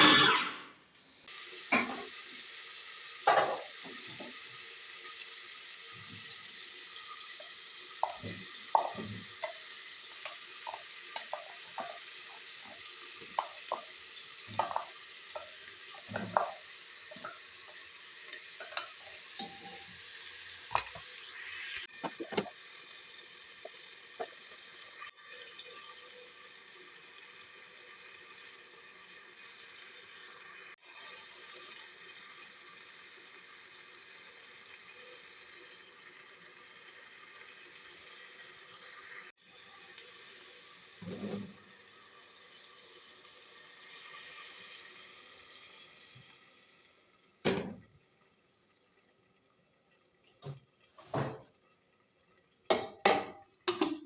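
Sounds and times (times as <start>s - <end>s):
food sizzling in a frying pan: 0.0s - 54.0s
spoon scraping a pan: 8.0s - 20.0s.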